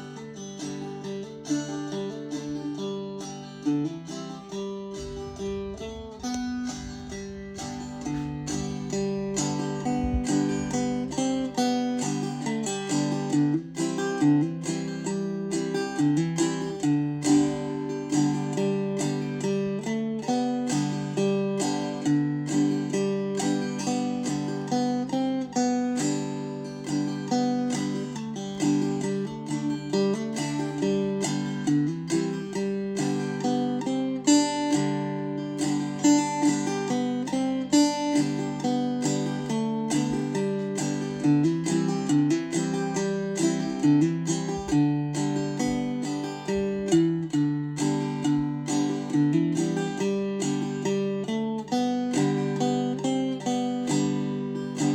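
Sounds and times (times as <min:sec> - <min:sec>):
banjo played clawhammer style: 0:00.0 - 0:54.9.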